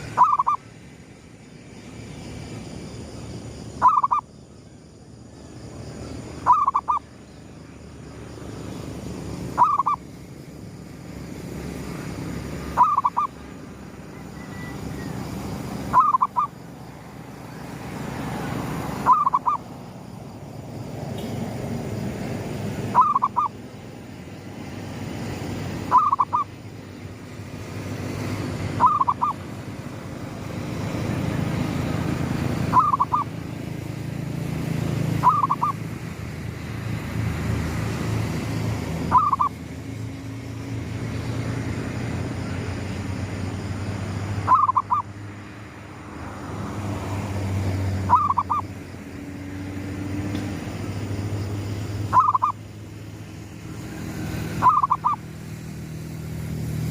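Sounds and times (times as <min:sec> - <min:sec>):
dove cooing: 0:00.2 - 0:00.6, 0:12.8 - 0:13.3, 0:15.9 - 0:16.5, 0:23.0 - 0:23.5, 0:25.9 - 0:26.4, 0:28.8 - 0:29.4, 0:32.7 - 0:33.3, 0:35.2 - 0:35.8, 0:39.1 - 0:39.5, 0:44.5 - 0:45.0, 0:48.1 - 0:48.6, 0:52.1 - 0:52.6, 0:54.6 - 0:55.2.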